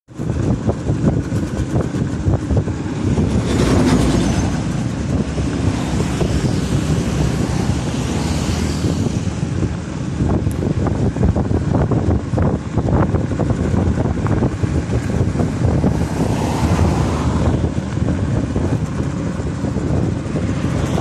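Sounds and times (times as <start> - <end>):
vehicle road rumble: 0.1 - 21.0.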